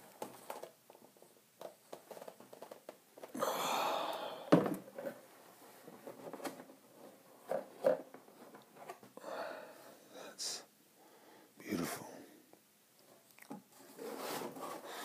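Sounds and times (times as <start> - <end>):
scraping rustle: 13.7 - 15.0.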